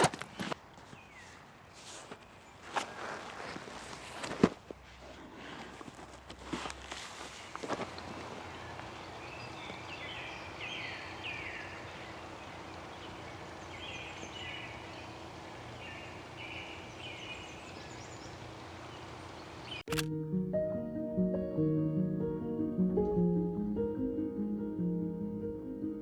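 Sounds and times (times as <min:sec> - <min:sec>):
songbird calling: 0:08.4 - 0:20.0.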